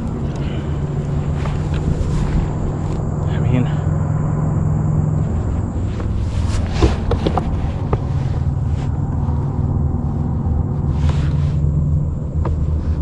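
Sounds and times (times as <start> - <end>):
boat motor humming: 0.0 - 13.0.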